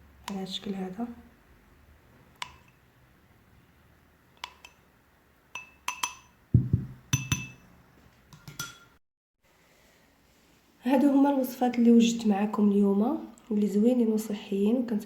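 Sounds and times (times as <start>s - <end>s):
glass dishes clinking: 5.6s - 7.7s, 8.5s - 9.0s
heavy knock: 6.6s - 7.1s.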